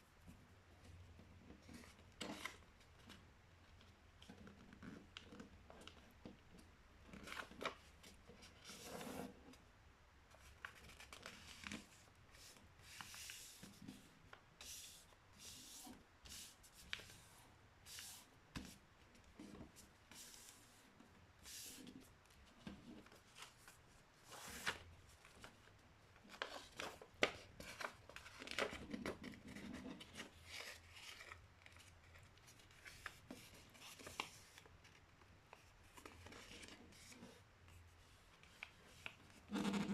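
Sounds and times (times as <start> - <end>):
paper rustling and crinkling: 22.6 - 37.3.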